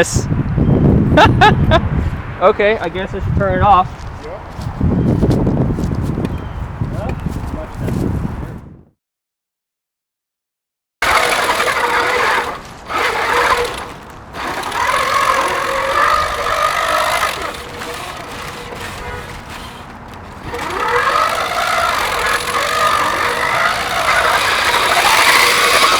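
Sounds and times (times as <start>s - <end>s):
electric motors whining: 11.0s - 25.9s.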